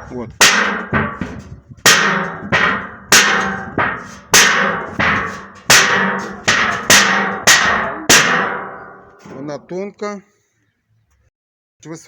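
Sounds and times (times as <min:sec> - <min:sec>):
metal sink struck ringing: 0:00.0 - 0:09.5.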